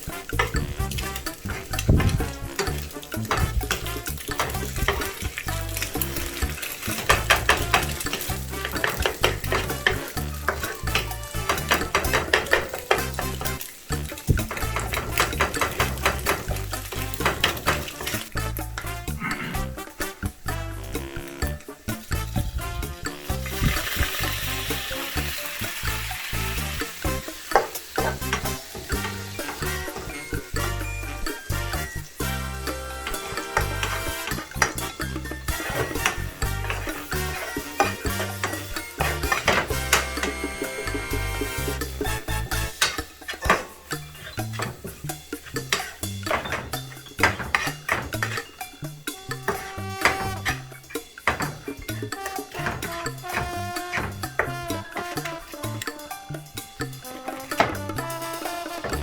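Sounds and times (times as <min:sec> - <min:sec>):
rice sizzling in a hot pan: 0:00.0 - 0:19.2, 0:23.2 - 0:49.7
spatula scraping and tapping pan: 0:00.0 - 0:59.0.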